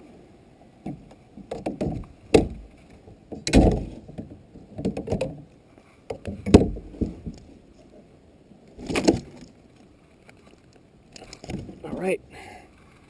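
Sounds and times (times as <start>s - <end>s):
handling knocks and thumps: 0.8s - 5.5s, 6.1s - 7.5s.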